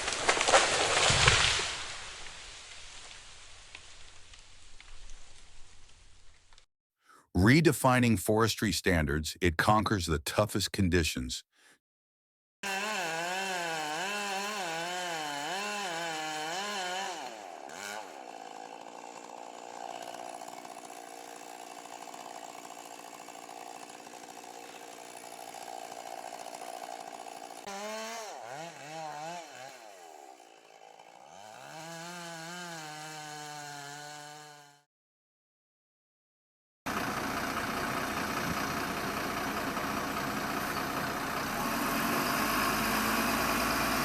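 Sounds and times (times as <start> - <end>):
chainsaw engine revving: 12.6 - 34.8, 36.9 - 44.0.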